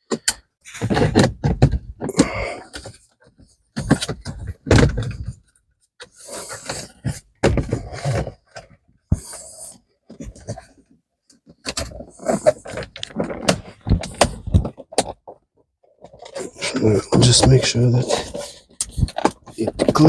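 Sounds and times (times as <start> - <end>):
plastic trim rustling and scraping: 11.5 - 15.2.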